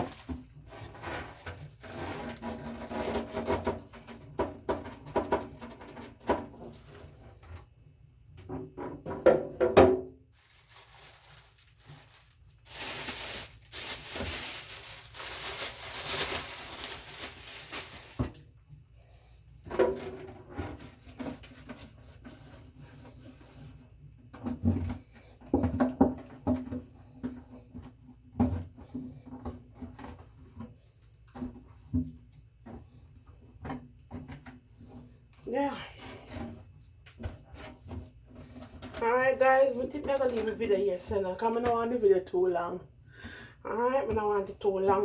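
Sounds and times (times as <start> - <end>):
household items knocking and clattering: 0.0 - 7.6, 8.4 - 18.5, 19.6 - 21.9, 24.3 - 42.0
steady rustling hiss: 10.3 - 19.1.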